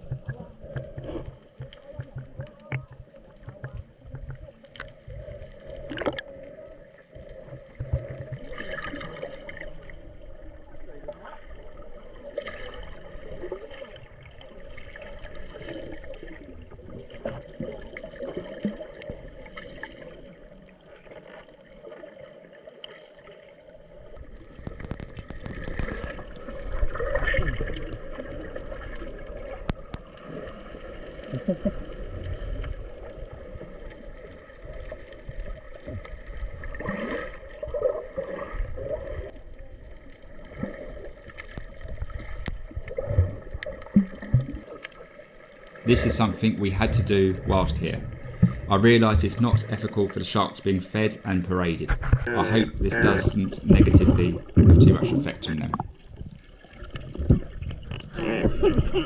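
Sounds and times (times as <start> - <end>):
sea water sloshing and gurgling: 0.0 - 59.0
bubbles: 5.1 - 6.5, 45.4 - 59.0
steady hum: 45.8 - 56.4.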